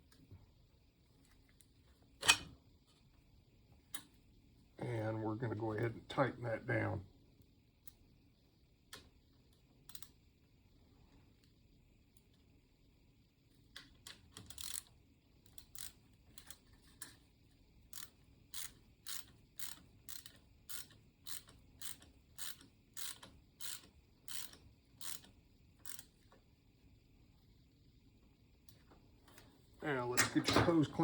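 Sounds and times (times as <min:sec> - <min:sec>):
hand ratchet clicking: 0:15.6 - 0:16.6, 0:18.0 - 0:26.1.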